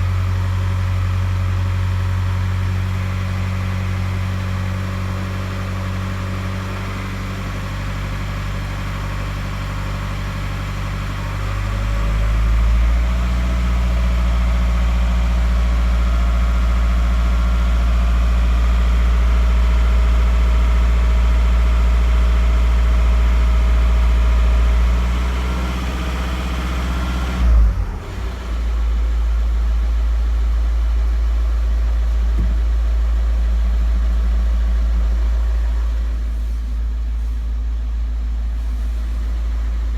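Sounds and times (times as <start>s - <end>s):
diesel engine running: 0.0s - 39.9s
sudden thump: 32.4s - 32.6s.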